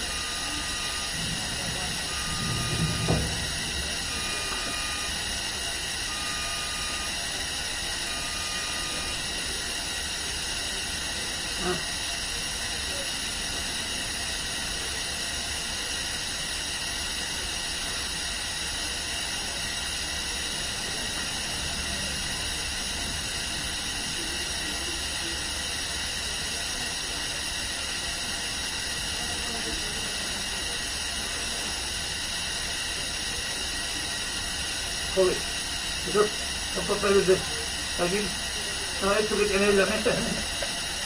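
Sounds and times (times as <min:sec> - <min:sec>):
low hum: 0:00.0 - 0:05.2
faint constant high tones: 0:00.0 - 0:16.8, 0:17.4 - 0:41.0.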